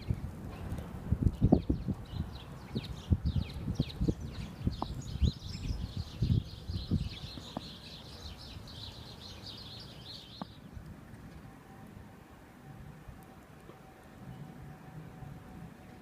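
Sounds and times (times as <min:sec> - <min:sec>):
small birds chirping: 0:00.0 - 0:10.9.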